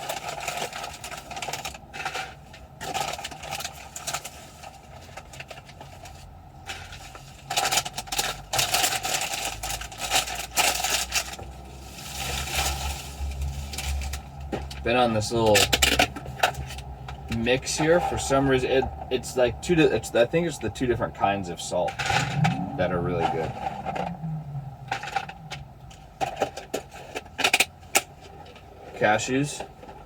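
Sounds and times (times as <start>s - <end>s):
low hum: 15.6s - 26.8s.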